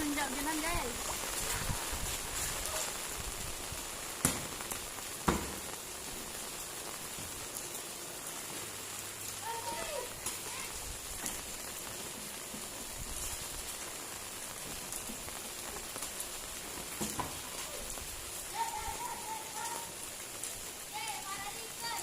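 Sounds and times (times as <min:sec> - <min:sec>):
rain pattering on ground: 0:00.0 - 0:22.0
children calling out: 0:09.4 - 0:10.9, 0:17.5 - 0:20.0, 0:20.9 - 0:22.0.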